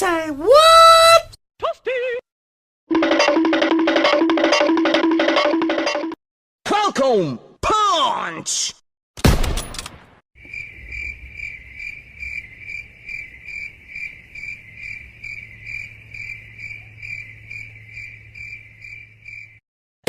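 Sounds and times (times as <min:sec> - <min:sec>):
crickets chirping: 0:10.4 - 0:19.6.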